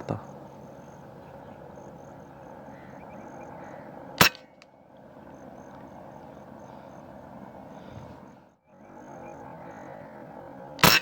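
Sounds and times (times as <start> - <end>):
field background noise: 0.0 - 11.0
air pistol shot crack: 10.8 - 11.0.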